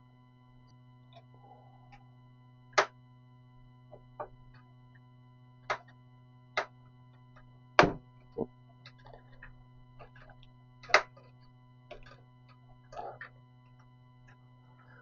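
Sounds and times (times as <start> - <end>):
steady low hum: 0.0 - 15.0
dull thud: 7.8 - 8.5.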